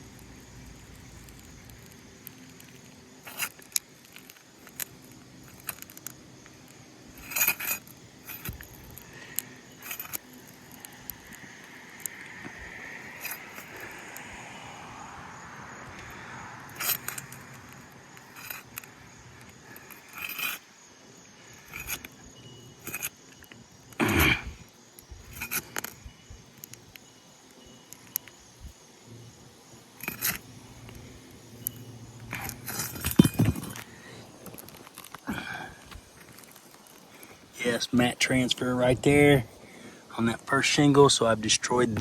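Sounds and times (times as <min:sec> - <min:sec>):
shingles scraping and knocking: 0:32.2 - 0:37.5.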